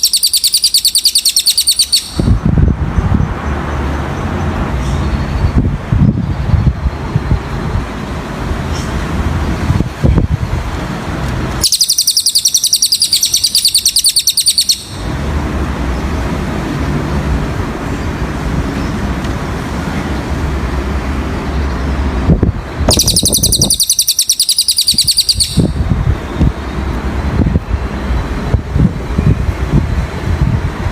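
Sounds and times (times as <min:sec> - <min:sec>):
bird song trills: 0:00.0 - 0:02.4, 0:11.6 - 0:15.0, 0:22.9 - 0:25.8
steady low rumble: 0:02.1 - 0:08.6, 0:25.4 - 0:30.9.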